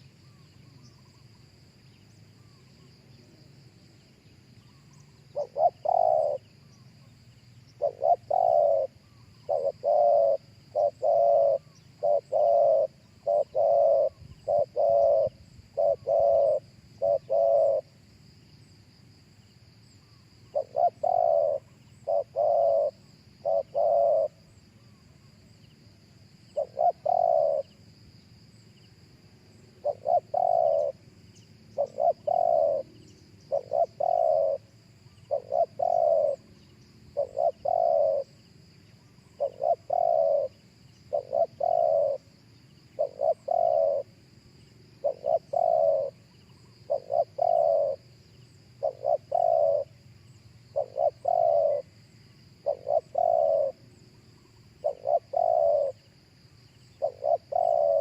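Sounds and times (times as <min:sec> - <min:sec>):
dove cooing: 0:04.8 - 0:06.8, 0:07.7 - 0:18.0, 0:20.4 - 0:24.6, 0:26.5 - 0:27.8, 0:29.8 - 0:31.1, 0:31.7 - 0:38.4, 0:39.2 - 0:42.3, 0:42.9 - 0:44.2, 0:44.9 - 0:52.0, 0:52.6 - 0:56.0, 0:56.9 - 0:58.0.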